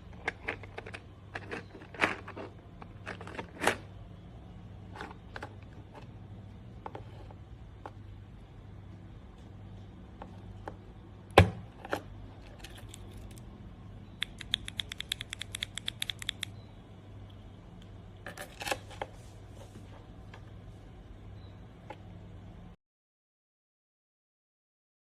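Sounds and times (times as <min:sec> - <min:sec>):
keyboard switch clicking: 0:14.2 - 0:16.5.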